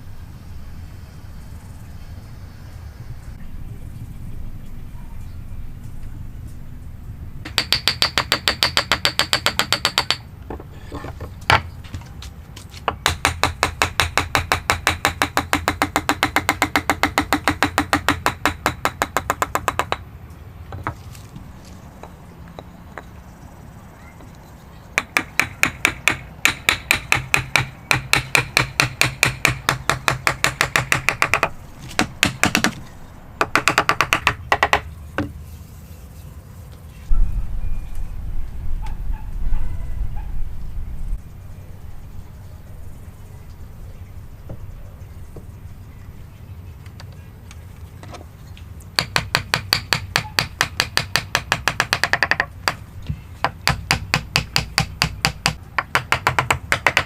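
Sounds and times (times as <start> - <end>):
low steady hum: 34.8 - 50.1.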